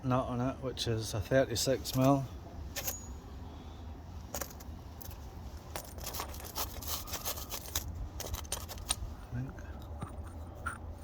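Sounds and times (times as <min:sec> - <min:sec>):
low steady hum: 0:00.0 - 0:11.0
metallic clicks and rattles: 0:04.3 - 0:09.0.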